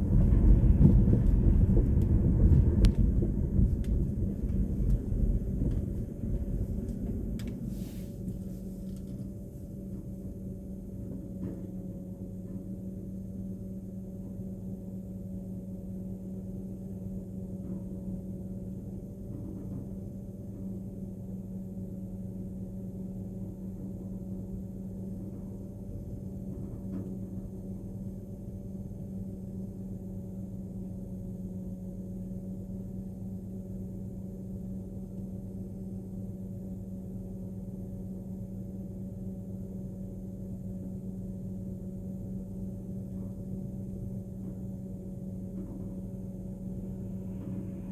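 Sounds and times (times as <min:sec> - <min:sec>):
low rumble: 0:00.0 - 0:09.2, 0:45.6 - 0:47.9
vehicle interior hum: 0:00.0 - 0:10.3.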